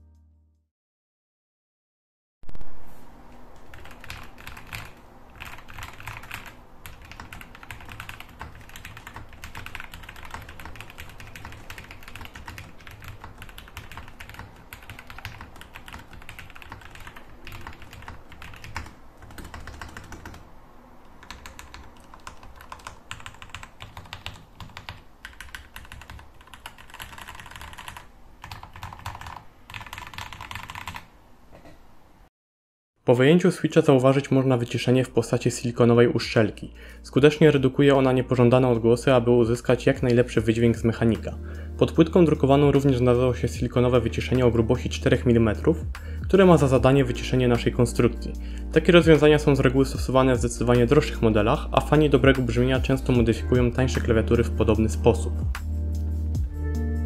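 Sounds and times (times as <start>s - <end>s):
typing on mechanical keyboard: 3.7s - 20.4s, 21.2s - 31.1s.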